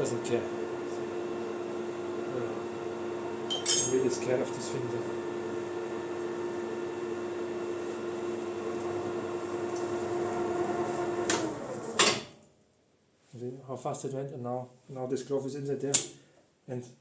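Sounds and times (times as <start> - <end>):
metal lathe humming: 0.0 - 11.9.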